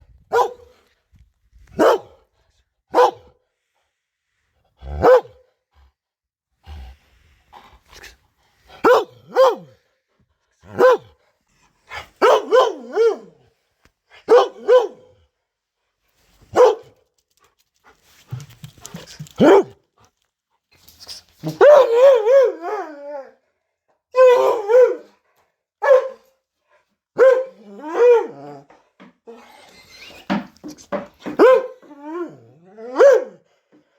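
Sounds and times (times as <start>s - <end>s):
dog barking loudly: 0.3s - 0.7s, 1.8s - 2.2s, 2.9s - 3.3s, 4.9s - 5.4s, 8.8s - 9.7s, 10.7s - 11.1s, 12.2s - 13.3s, 14.3s - 15.1s, 16.5s - 17.0s, 19.4s - 19.7s, 21.6s - 22.3s, 25.8s - 26.2s, 27.2s - 28.3s, 31.2s - 31.8s, 33.0s - 33.4s.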